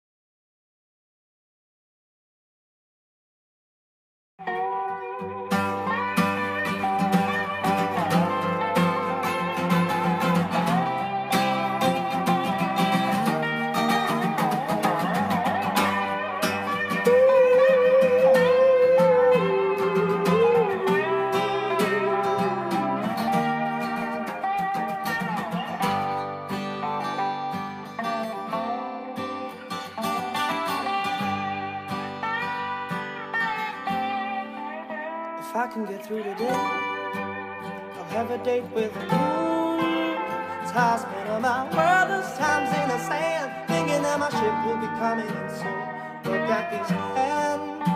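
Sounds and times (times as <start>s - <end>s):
instrumental rock music: 4.4s - 47.9s
slide guitar gliding: 4.4s - 47.9s
strummed acoustic guitar: 4.4s - 47.9s.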